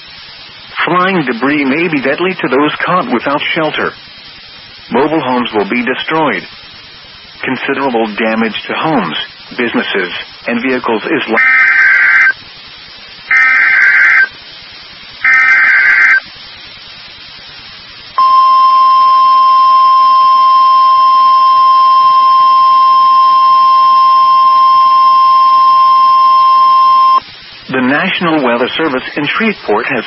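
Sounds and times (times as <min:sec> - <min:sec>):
warbling data bursts: 0:07.4 - 0:12.4, 0:13.2 - 0:14.4, 0:15.2 - 0:16.3, 0:18.2 - 0:30.0
steady alarm tone: 0:11.4 - 0:12.4, 0:13.3 - 0:14.3, 0:15.2 - 0:16.2, 0:18.2 - 0:27.2.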